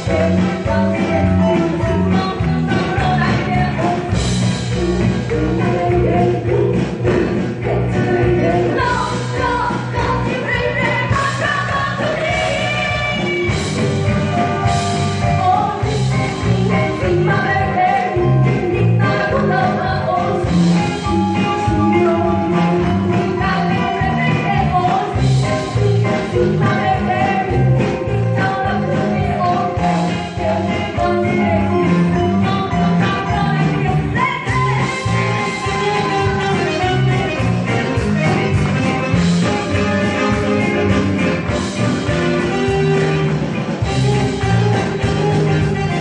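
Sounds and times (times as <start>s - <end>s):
woman singing: 0.0s - 4.2s, 5.3s - 37.4s
live band playing: 0.0s - 46.0s.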